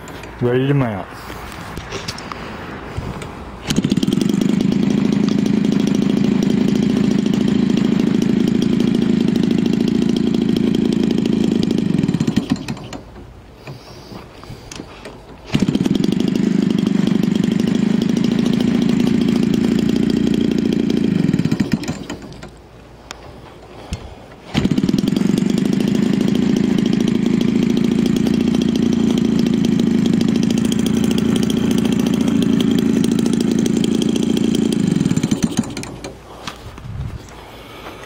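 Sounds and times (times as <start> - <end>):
two-stroke engine revving: 3.6 - 13.0, 15.4 - 22.5, 24.5 - 36.2.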